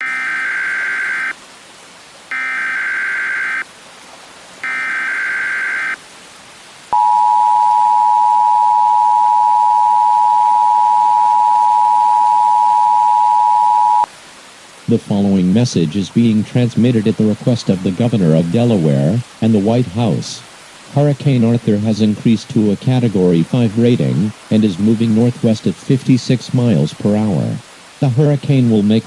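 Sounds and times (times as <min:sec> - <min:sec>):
two-tone attention signal: 0:00.0 - 0:01.4, 0:02.3 - 0:03.6, 0:04.6 - 0:06.0, 0:07.0 - 0:14.1
warbling data tones: 0:00.0 - 0:01.4, 0:02.3 - 0:03.6, 0:04.6 - 0:06.0.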